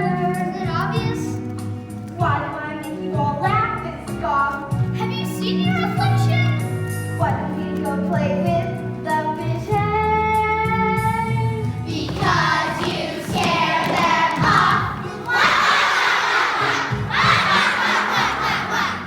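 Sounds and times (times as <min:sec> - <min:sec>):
musical accompaniment: 0:00.0 - 0:19.0
children singing: 0:11.8 - 0:19.0.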